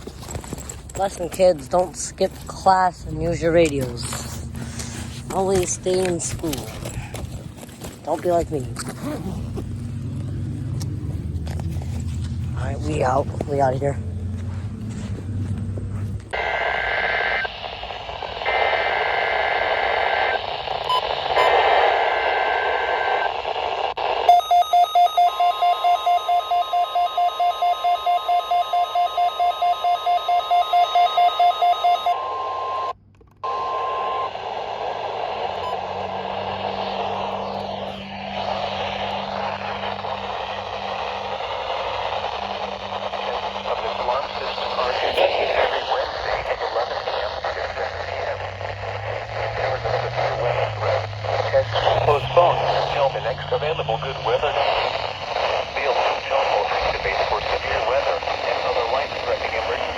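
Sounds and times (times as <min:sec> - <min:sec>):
radio static hiss: 0:00.0 - 0:14.8, 0:16.0 - 0:59.9
low hum: 0:00.0 - 0:59.9
pulsing beep over steady tone: 0:16.4 - 0:23.3, 0:24.2 - 0:56.6
buzzy digital data bursts: 0:33.5 - 0:57.8.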